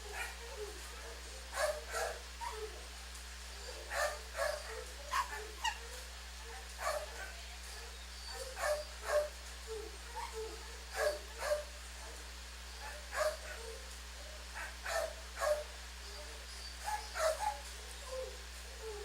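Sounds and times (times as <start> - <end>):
dog barking: 0.1 - 2.8, 3.6 - 9.4, 10.1 - 13.8, 14.5 - 15.7, 16.8 - 17.6.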